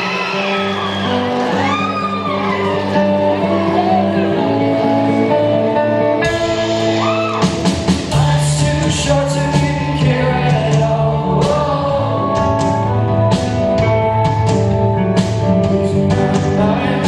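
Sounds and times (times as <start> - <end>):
electric guitar chords: 0.0 - 17.0
person singing: 1.5 - 13.8, 15.2 - 17.0
drums and cymbals: 6.2 - 17.0.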